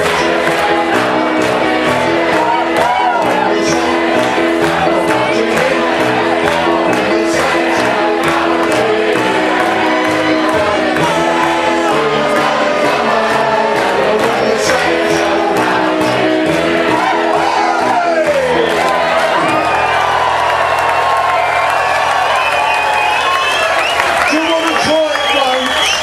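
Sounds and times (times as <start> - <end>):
crowd singing in unison: 0.0 - 20.2
live instrumental backing: 0.0 - 26.0.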